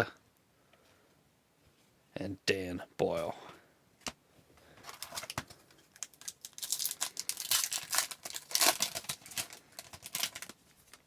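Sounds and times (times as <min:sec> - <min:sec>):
wrapper crinkling and tearing: 0:04.9 - 0:11.0.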